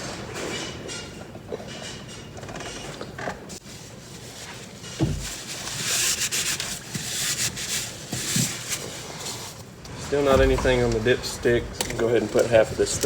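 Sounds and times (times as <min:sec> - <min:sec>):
rubbing and wiping: 0:03.6 - 0:11.6.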